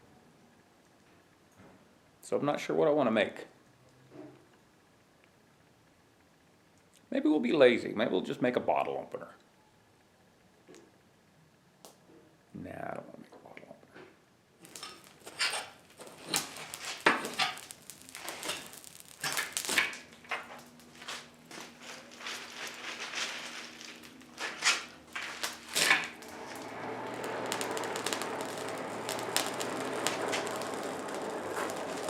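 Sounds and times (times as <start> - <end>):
steady rushing hum: 19.4 - 32.0.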